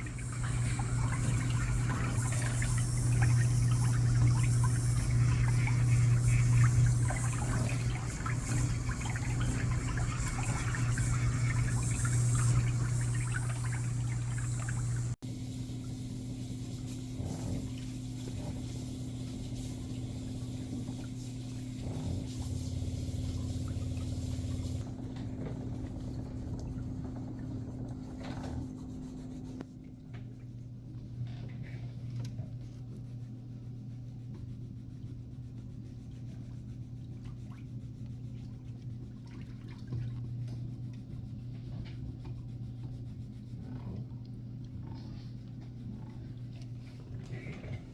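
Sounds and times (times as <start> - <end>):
water running and splashing: 0.0 - 15.2, 17.8 - 24.8
steady motor hum: 0.0 - 47.9.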